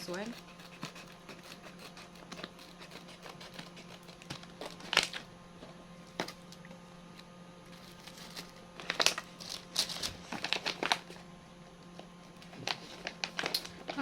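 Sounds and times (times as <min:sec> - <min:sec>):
faint steady hum: 0:00.0 - 0:14.0
plastic snack packet crinkling: 0:04.2 - 0:05.3, 0:07.7 - 0:11.2, 0:12.3 - 0:14.0.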